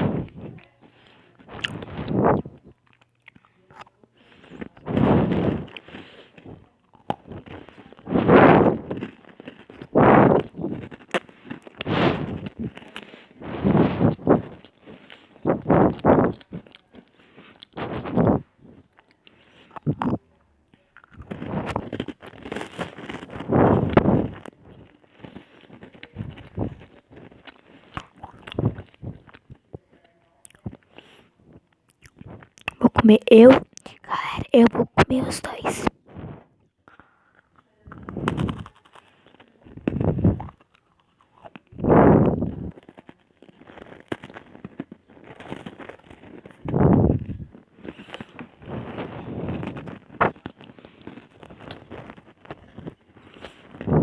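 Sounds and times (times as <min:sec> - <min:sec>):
biscuits being crunched: 0:00.0 - 0:20.2, 0:20.8 - 0:31.2, 0:36.9 - 0:54.0
mouth clicks: 0:32.6 - 0:35.9.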